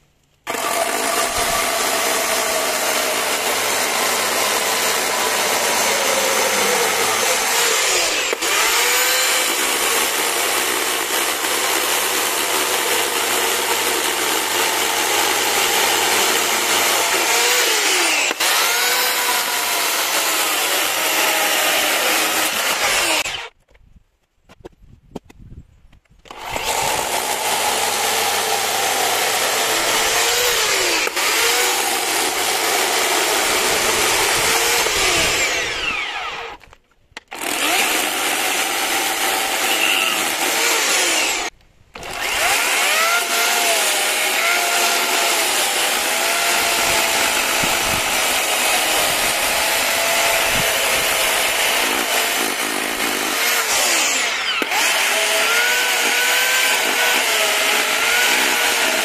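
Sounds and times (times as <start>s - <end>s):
motorised power tool running: 0.4s - 23.5s, 26.3s - 36.7s, 37.3s - 59.0s.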